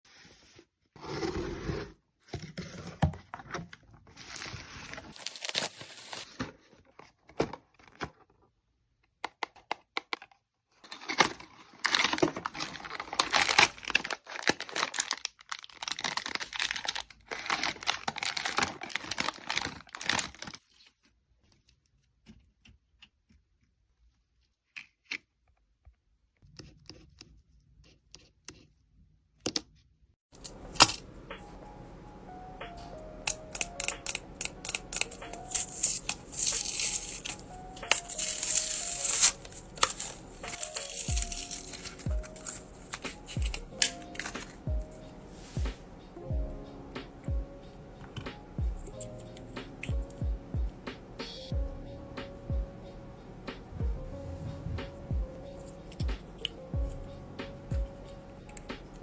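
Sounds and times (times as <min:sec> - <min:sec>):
snack packaging crinkling: 0:05.0 - 0:06.4, 0:10.9 - 0:20.9, 0:33.3 - 0:44.7.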